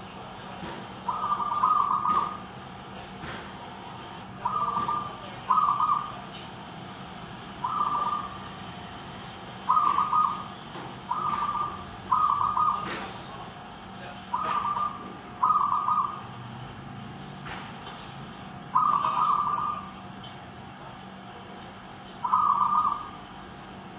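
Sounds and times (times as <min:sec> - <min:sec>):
doves cooing: 0:01.1 - 0:02.4, 0:04.4 - 0:06.3, 0:07.6 - 0:08.6, 0:09.6 - 0:13.0, 0:14.3 - 0:16.3, 0:18.7 - 0:19.9, 0:22.2 - 0:23.2.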